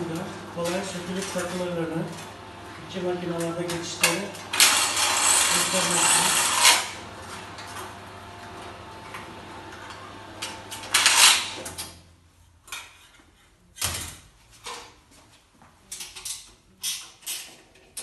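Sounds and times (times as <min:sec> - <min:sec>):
steady machine hum: 0:00.0 - 0:11.7.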